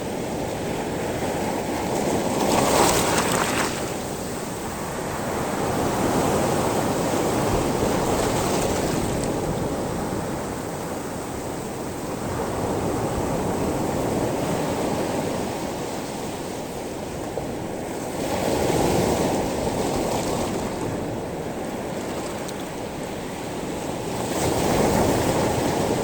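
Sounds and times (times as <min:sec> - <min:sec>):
waves washing over pebbles: 0:01.1 - 0:10.9, 0:17.7 - 0:26.0.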